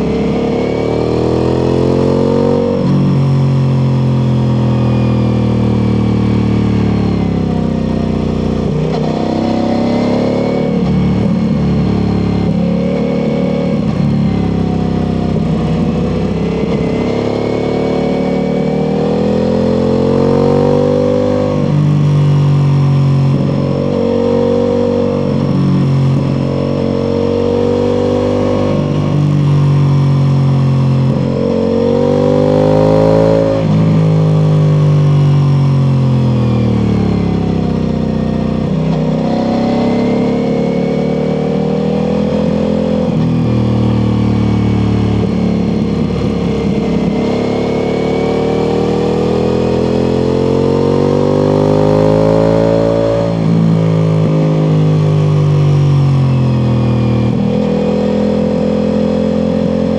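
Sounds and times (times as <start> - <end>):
motorcycle engine revving: 0.0 - 59.9.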